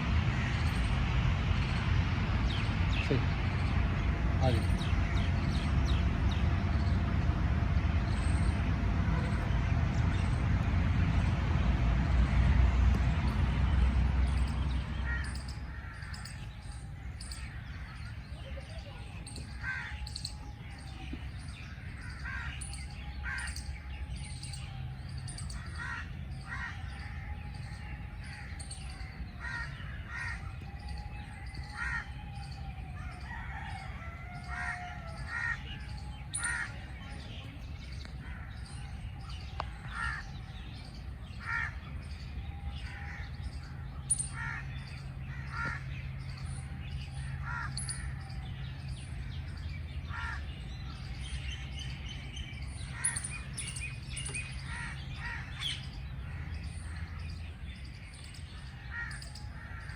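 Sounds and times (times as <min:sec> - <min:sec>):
steady low rumble: 0:00.0 - 0:33.3
birds calling: 0:00.0 - 0:59.9.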